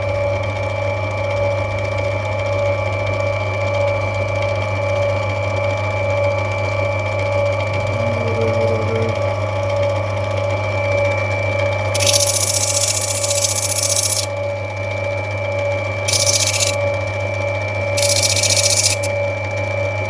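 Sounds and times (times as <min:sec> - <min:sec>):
electric motor humming: 0:12.0 - 0:14.3, 0:16.1 - 0:16.8, 0:18.0 - 0:19.1
hissing grind of stone on wheel: 0:12.0 - 0:14.3, 0:16.1 - 0:16.8.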